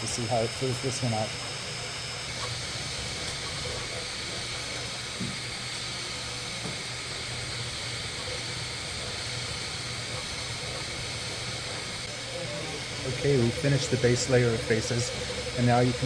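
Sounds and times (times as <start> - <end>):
printer fans whirring: 0.0 - 16.0.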